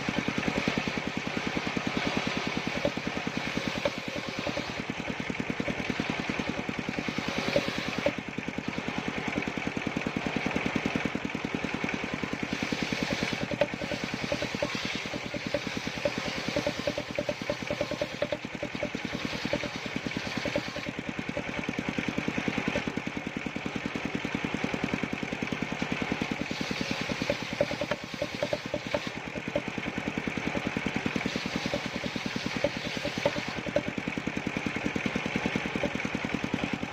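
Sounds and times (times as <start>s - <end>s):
small saw engine running: 0.0s - 36.9s
steady whine: 12.1s - 23.0s, 26.1s - 30.2s, 30.8s - 34.1s.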